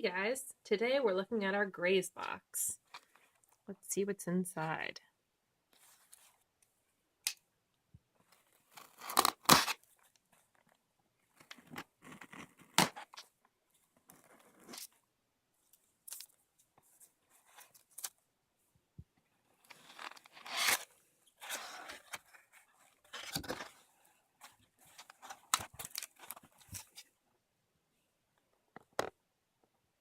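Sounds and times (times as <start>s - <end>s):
cardboard box tearing: 8.8s - 9.9s, 19.9s - 22.3s
packaging rustling: 19.7s - 27.0s.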